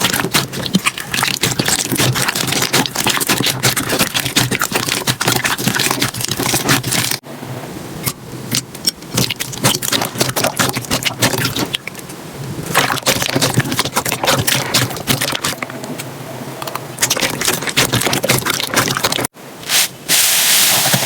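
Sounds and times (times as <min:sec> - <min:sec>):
slime crackling and popping: 0:00.0 - 0:07.2.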